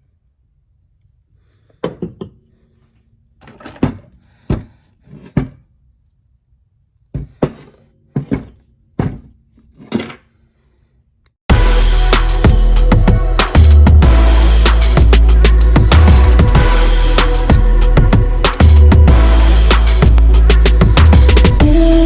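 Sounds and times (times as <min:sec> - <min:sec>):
metal parts knocking and clinking: 0:03.4 - 0:04.8
music: 0:11.5 - 0:22.0.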